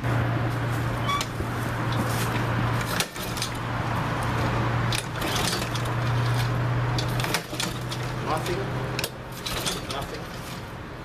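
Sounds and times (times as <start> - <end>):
engine turning over: 1.0 - 10.6
clicks and rattles: 1.9 - 3.6, 4.9 - 10.7
recoil starter being yanked: 4.9 - 10.7.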